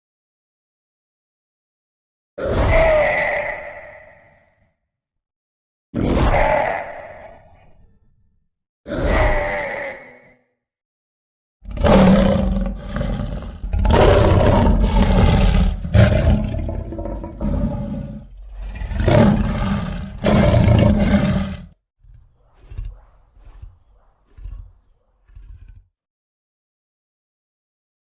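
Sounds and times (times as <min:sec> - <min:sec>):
harsh monster roar: 0:02.4 - 0:04.4, 0:06.0 - 0:07.6, 0:08.9 - 0:10.3, 0:11.6 - 0:25.9
faint low rumbles: 0:22.0 - 0:25.7.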